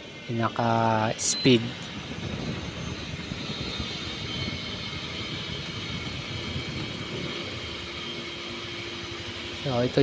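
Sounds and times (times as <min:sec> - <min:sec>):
blower fan rushing air: 0:00.0 - 0:10.0.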